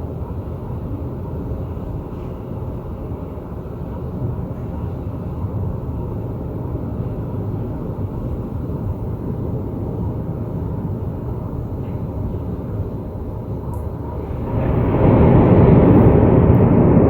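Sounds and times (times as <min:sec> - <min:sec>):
rolling thunder rumble: 0:07.4 - 0:17.0.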